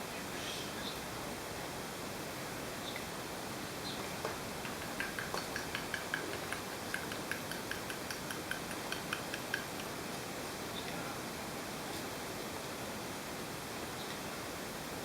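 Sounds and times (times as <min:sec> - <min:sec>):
faint steady hiss: 0:00.0 - 0:15.0
budgie clicking chirps: 0:04.6 - 0:10.0.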